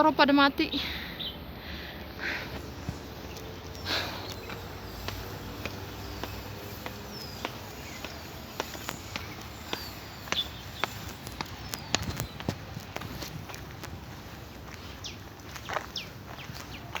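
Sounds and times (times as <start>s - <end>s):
high chirping bird calls: 0.1s - 12.7s
footsteps on a path: 1.4s - 17.0s.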